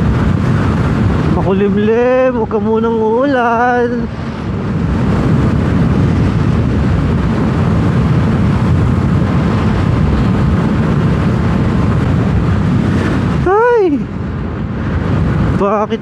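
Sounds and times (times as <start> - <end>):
road noise of scooter: 0.0 - 16.0
wind buffeting microphone: 0.0 - 16.0.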